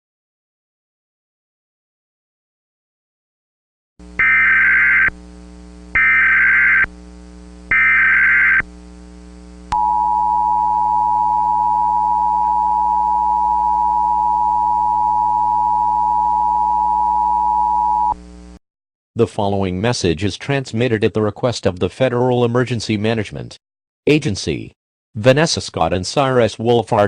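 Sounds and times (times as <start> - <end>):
faint low hum: 4.1 - 18.5
warbling digital data tones: 4.2 - 5.1, 6.0 - 6.9, 7.7 - 8.6.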